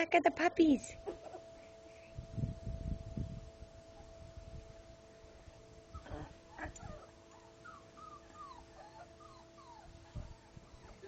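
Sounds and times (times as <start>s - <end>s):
faint steady hum: 0.0s - 11.0s
puppies whimpering: 1.0s - 1.8s, 6.0s - 11.0s.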